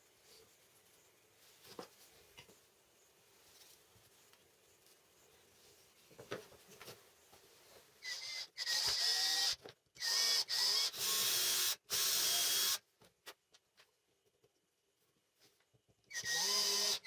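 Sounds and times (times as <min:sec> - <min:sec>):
power drill bursts: 0:08.0 - 0:12.8, 0:16.1 - 0:17.0.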